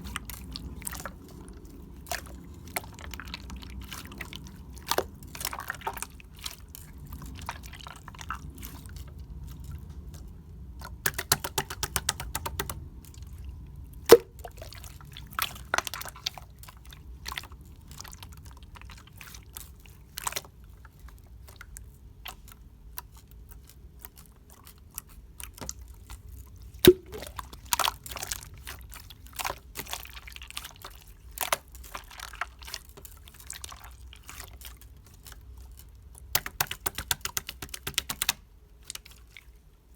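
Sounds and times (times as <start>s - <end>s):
sharp slime pops: 14.1s - 14.4s, 26.9s - 27.4s
rapid slime crackles: 14.5s - 39.6s
slime clicking and popping: 26.9s - 27.4s.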